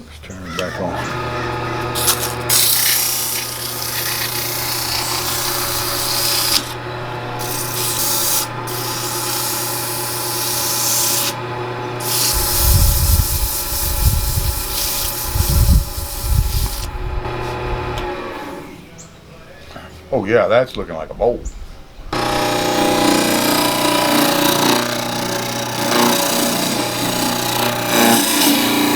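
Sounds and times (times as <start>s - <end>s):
tool scraping spinning wood: 0.0s - 18.9s, 22.2s - 28.9s
wood lathe motor hum: 0.5s - 18.9s, 22.2s - 28.9s
low rumbling thumps: 12.4s - 18.4s.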